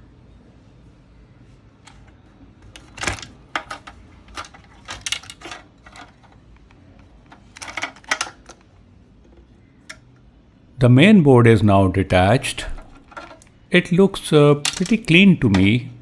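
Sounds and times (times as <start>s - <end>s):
plastic and metal parts clicking: 1.9s - 10.2s, 12.6s - 13.6s, 14.6s - 15.8s.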